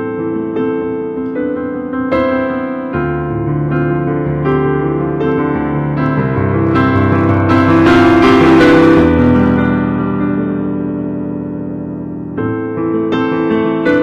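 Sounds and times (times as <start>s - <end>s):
slow keyboard chords: 6.4s - 10.0s.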